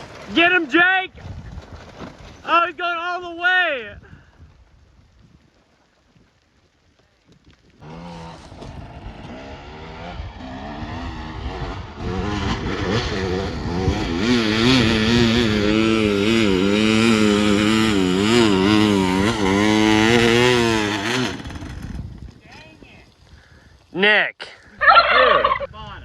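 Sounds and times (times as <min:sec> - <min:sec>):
dirt bike engine revving: 0:07.8 - 0:22.2.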